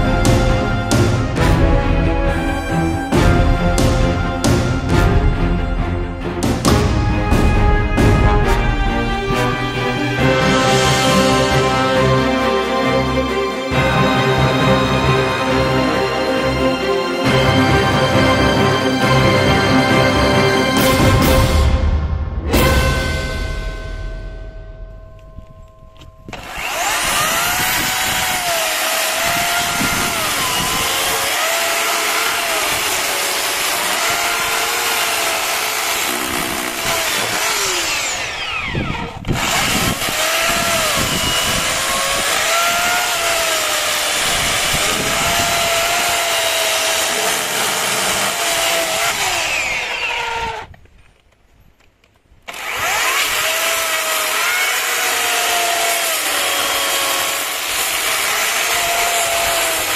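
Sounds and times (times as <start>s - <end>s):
power tool running: 26.0s - 50.8s, 52.5s - 59.9s.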